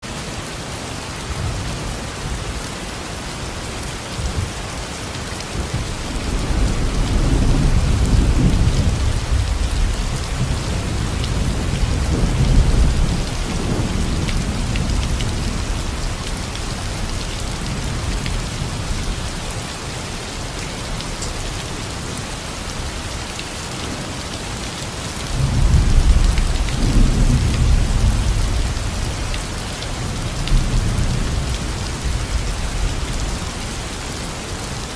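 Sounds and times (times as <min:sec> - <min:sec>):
heavy rain falling: 0:00.0 - 0:34.9
low rolling thunder: 0:05.6 - 0:19.6, 0:23.7 - 0:33.5.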